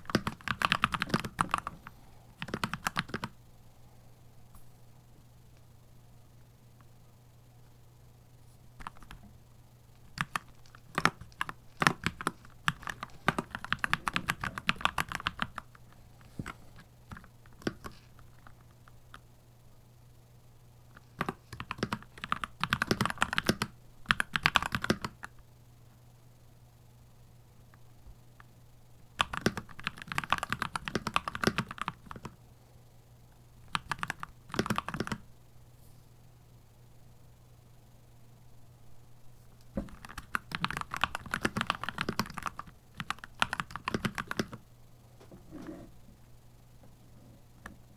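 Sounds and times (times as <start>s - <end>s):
mechanical keyboard typing: 0.0s - 3.4s, 8.8s - 9.2s, 10.0s - 15.8s, 16.4s - 18.6s, 21.0s - 25.3s, 29.2s - 32.4s, 33.7s - 35.2s, 39.8s - 44.6s.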